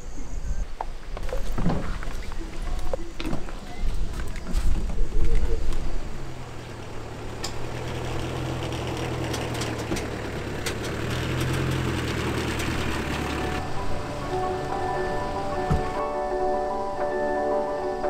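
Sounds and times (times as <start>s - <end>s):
engine running: 5.5s - 18.0s.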